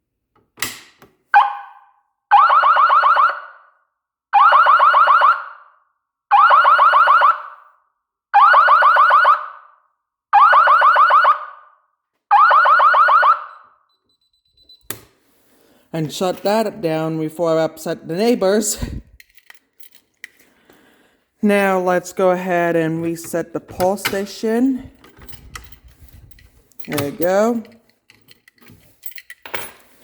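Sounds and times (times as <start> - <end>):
fire alarm horn blasts: 1.4 - 3.7, 4.4 - 5.7, 6.3 - 7.6, 10.4 - 13.9.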